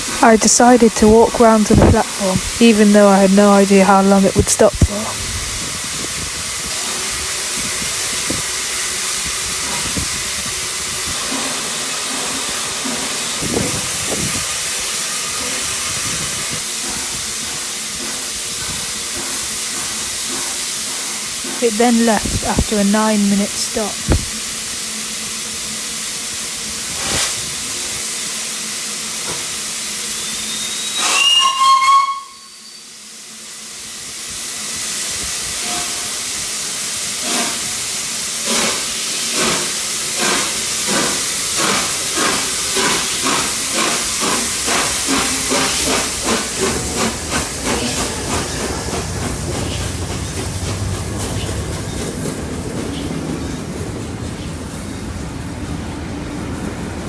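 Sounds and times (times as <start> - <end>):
steam hissing: 0.0 - 57.0
steam locomotive whistle: 28.8 - 33.7, 35.4 - 38.0
locomotive exhaust beats: 40.3 - 54.9.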